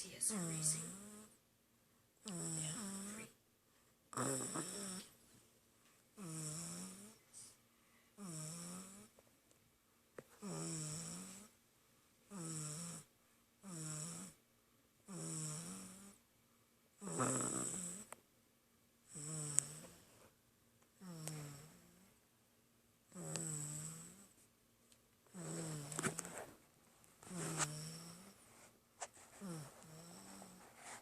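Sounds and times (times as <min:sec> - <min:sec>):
baby snoring: 0:02.3 - 0:03.3, 0:04.1 - 0:05.2, 0:06.2 - 0:07.2, 0:08.2 - 0:09.1, 0:10.4 - 0:11.5, 0:12.3 - 0:14.4, 0:15.1 - 0:16.2, 0:17.0 - 0:18.1, 0:19.1 - 0:20.0, 0:21.0 - 0:22.1, 0:23.1 - 0:24.3, 0:25.3 - 0:26.5, 0:27.2 - 0:28.4, 0:29.0 - 0:31.0.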